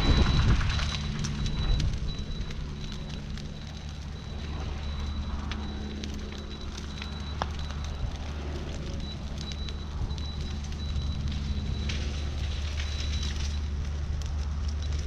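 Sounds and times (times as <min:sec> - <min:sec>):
burn pile crackling and popping: 0:00.0 - 0:15.0
diesel engine running: 0:00.0 - 0:15.0.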